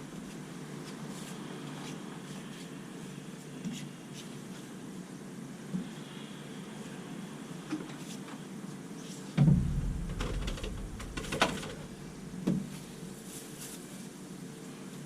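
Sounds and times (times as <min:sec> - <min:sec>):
heavy thump: 0:09.4 - 0:13.0
steady low hum: 0:09.4 - 0:13.4.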